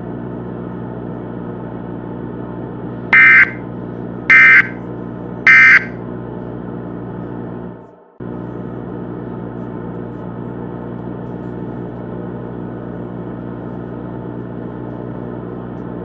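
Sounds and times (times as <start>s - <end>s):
digital data tone bursts: 3.2s - 3.6s, 4.3s - 4.8s, 5.5s - 5.9s.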